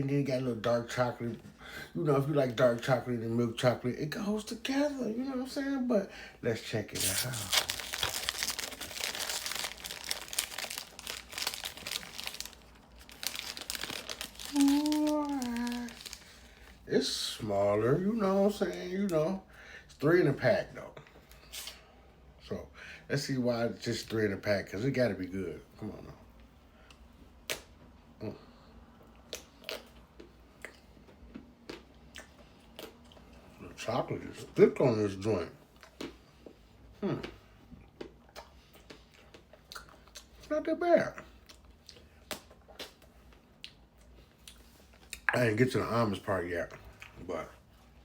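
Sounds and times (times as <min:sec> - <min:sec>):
chocolate coating crunching: 0:06.8 - 0:16.8
plastic wrapper crinkling: 0:06.9 - 0:16.8.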